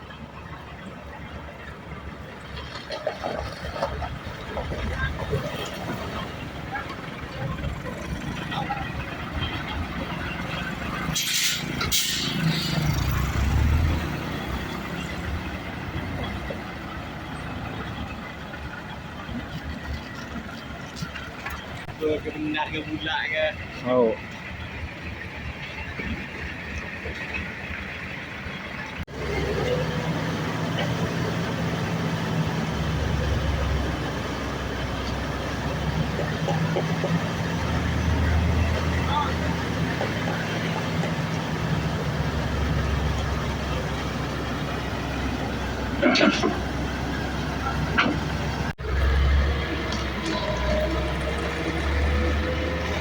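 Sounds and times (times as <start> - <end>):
diesel truck engine revving and idling: 0.0 - 53.0
air brake hisses: 11.2 - 12.4.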